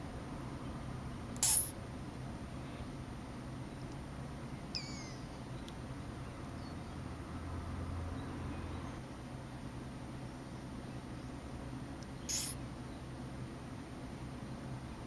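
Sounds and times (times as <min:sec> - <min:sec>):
turtle hissing sneeze: 0:01.4 - 0:01.7, 0:12.3 - 0:12.6.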